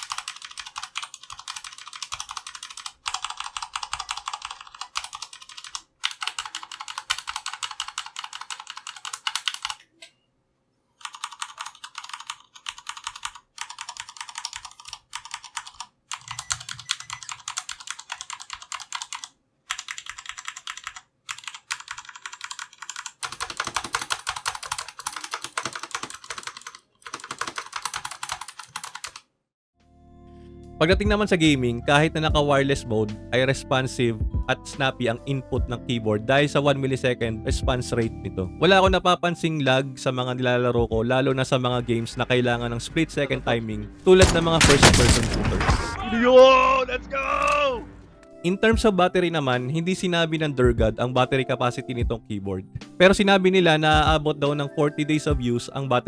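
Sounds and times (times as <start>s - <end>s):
mechanical keyboard typing: 0.0s - 9.8s, 11.0s - 29.2s.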